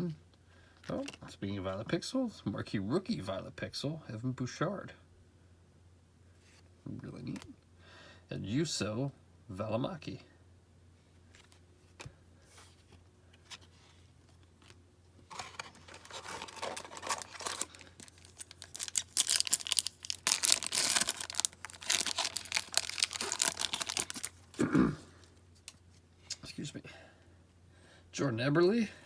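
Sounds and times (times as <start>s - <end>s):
wrapper tearing and crinkling: 15.3s - 24.6s.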